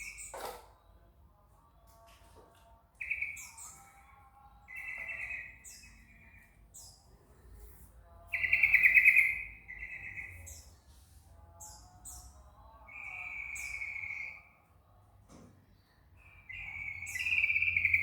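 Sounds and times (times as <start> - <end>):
bird buzzy trilling song: 3.0 - 4.1, 8.3 - 10.8, 11.6 - 14.5, 16.3 - 18.0
very high bird chirps: 8.3 - 10.8, 11.6 - 14.5, 16.4 - 18.0.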